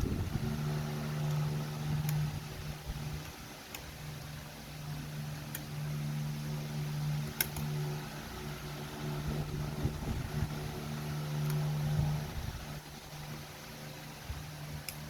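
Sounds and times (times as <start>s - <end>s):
low machine hum: 0.0s - 15.0s
sharp clicks: 7.2s - 7.7s.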